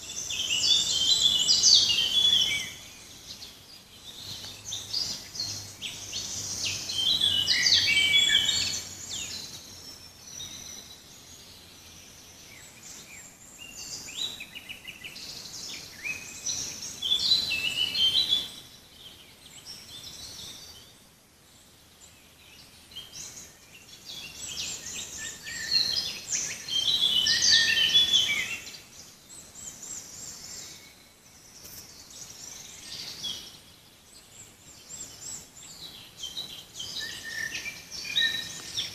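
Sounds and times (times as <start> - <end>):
songbirds singing and chirping: 0.0 - 38.9.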